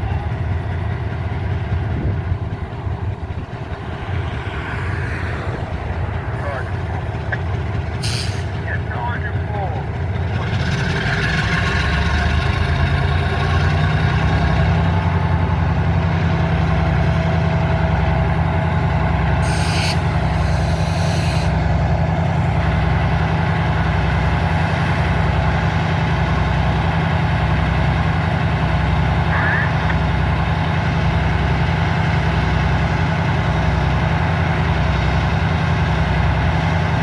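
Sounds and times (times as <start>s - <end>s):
diesel locomotive engine drone: 0.0s - 37.0s
air hiss: 19.4s - 21.5s.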